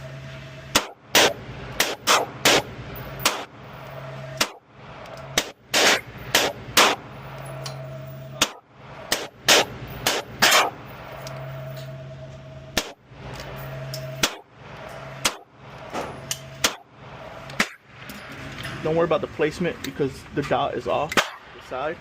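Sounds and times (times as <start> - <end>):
steady low hum: 0.0 - 22.0
pistol shots: 0.7 - 3.5, 4.4 - 4.6, 5.4 - 7.0, 8.4 - 10.8, 12.8 - 13.0, 14.2 - 14.5, 15.2 - 15.5, 16.6 - 16.9.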